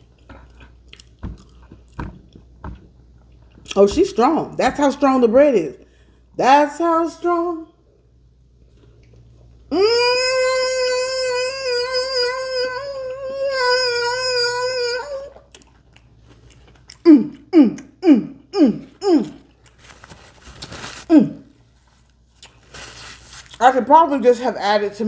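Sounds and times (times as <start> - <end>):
woman vocalising with pleasure: 9.7 - 15.4.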